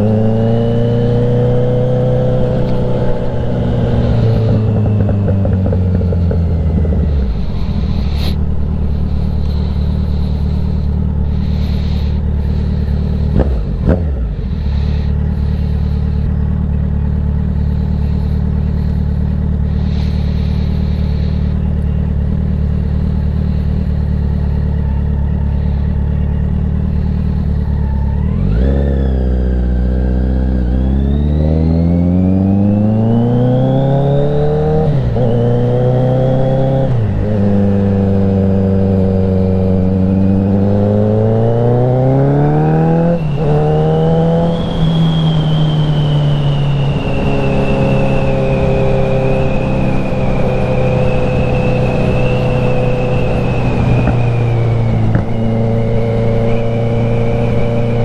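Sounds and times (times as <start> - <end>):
motorcycle accelerating through gears: 0.0 - 58.0
motorcycle throttle blips: 0.0 - 58.0
motorcycle engine idling: 2.5 - 28.5.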